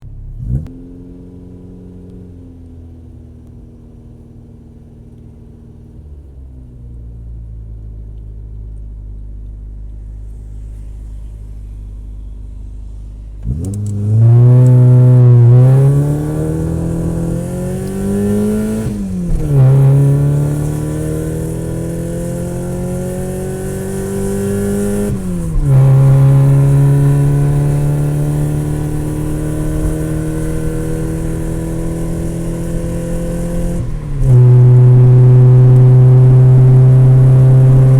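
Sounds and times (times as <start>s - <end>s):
race car engine revving: 10.2s - 37.9s.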